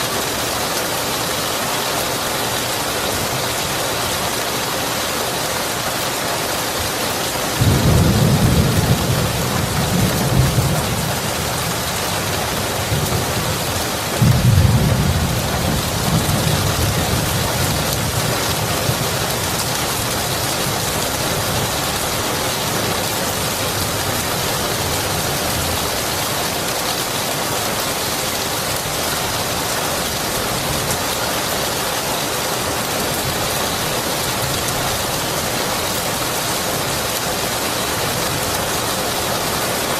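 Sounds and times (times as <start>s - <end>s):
heavy rain: 0.0s - 39.9s
thunder rumbling: 7.6s - 25.8s.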